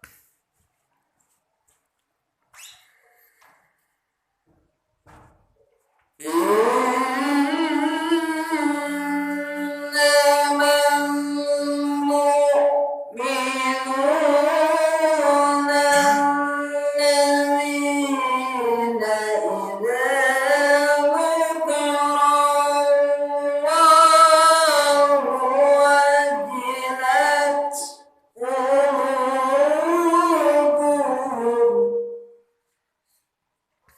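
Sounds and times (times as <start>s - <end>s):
high voice chanting recitation: 6.2s - 32.8s.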